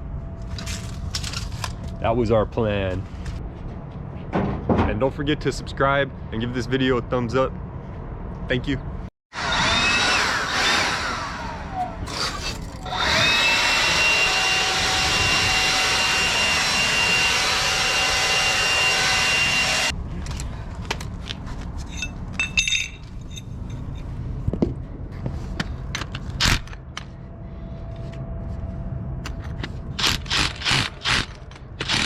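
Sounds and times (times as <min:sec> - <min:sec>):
knocks and metallic rattles: 0:04.0 - 0:05.3
power tool whining: 0:09.4 - 0:19.9.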